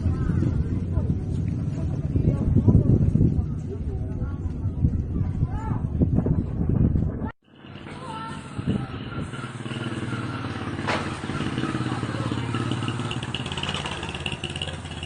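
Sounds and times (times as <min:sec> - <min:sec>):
small engine running: 0:07.5 - 0:15.0.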